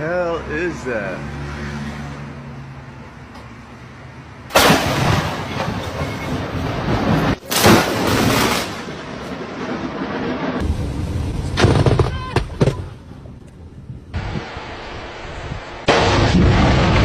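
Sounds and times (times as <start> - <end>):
thunderclaps with rumble: 4.6 - 12.8, 15.8 - 17.0.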